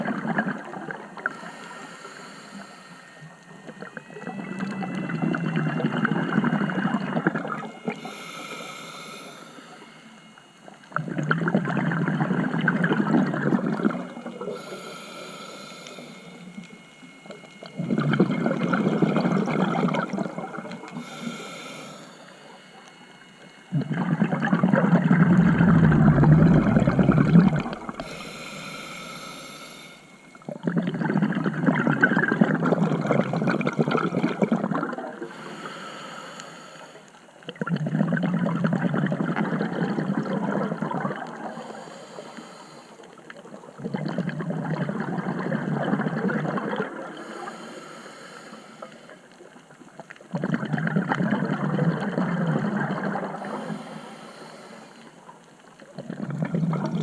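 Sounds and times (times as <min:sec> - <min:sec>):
exhaled bubbles rushing underwater: 0:00.0 - 0:01.6, 0:03.2 - 0:08.2, 0:09.7 - 0:14.7, 0:16.2 - 0:28.8, 0:30.2 - 0:35.4, 0:37.4 - 0:41.7, 0:43.2 - 0:47.3, 0:49.4 - 0:53.8, 0:55.4 - 0:57.0
regulator inhalation hiss: 0:00.6 - 0:10.8, 0:12.5 - 0:23.8, 0:25.0 - 0:30.6, 0:35.1 - 0:37.4, 0:41.3 - 0:43.5, 0:47.1 - 0:49.6, 0:53.2 - 0:55.4.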